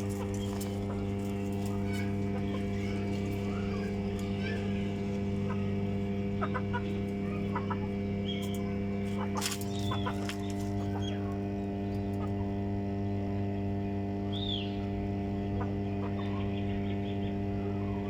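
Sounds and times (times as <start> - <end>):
chickens clucking: 0.0 - 12.6, 15.5 - 16.6
low electrical hum: 0.0 - 18.0.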